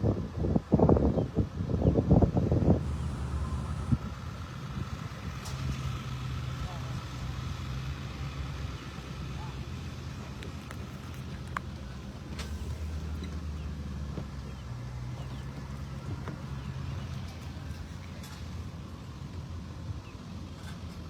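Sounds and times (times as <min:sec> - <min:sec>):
large engine idling: 0:02.5 - 0:21.0
faint clicks: 0:10.2 - 0:13.2.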